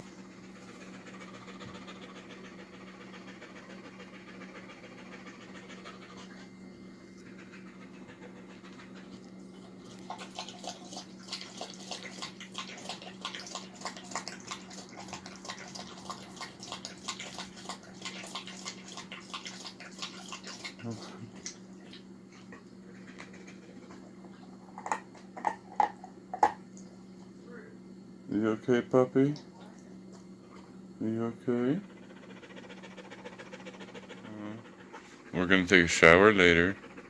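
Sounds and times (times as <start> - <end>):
puppy panting: 0.0 - 24.9, 31.6 - 37.0.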